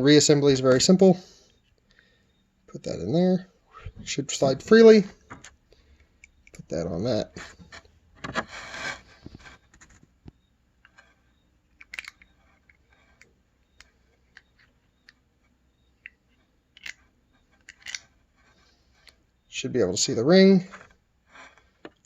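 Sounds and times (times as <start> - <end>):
small metal parts clicking: 11.7 - 15.2, 16.0 - 18.2.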